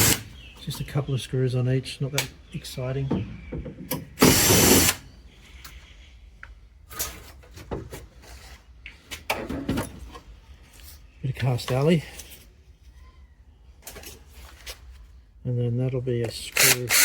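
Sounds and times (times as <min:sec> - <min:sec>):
power drill backing out screw: 0:00.0 - 0:00.2, 0:04.2 - 0:05.0, 0:16.6 - 0:17.0.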